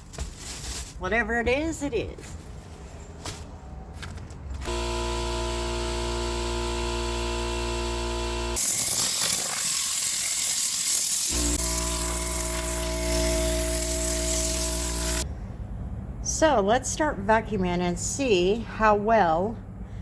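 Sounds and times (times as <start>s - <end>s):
motor humming: 4.7s - 9.9s, 11.3s - 15.2s
compressed air tool hissing: 8.6s - 15.2s.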